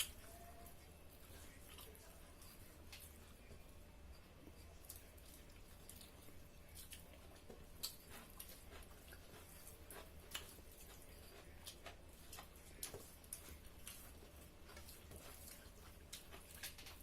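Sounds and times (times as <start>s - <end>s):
eating and chewing clicks: 0.0s - 0.4s, 4.7s - 17.0s.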